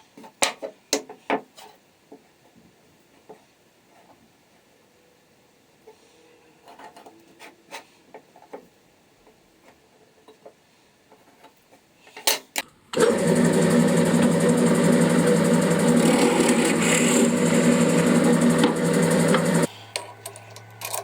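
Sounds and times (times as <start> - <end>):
electric power tool running: 12.7 - 21.0.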